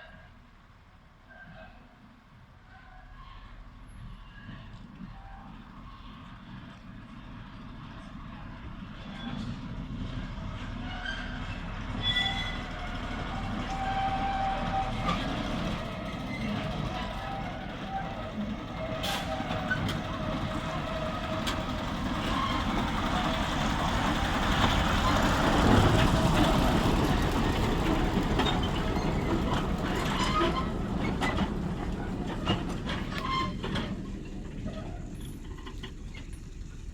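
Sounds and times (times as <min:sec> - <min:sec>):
train rattling clicks: 0:04.2 - 0:36.9
train wheels screeching: 0:08.9 - 0:36.3.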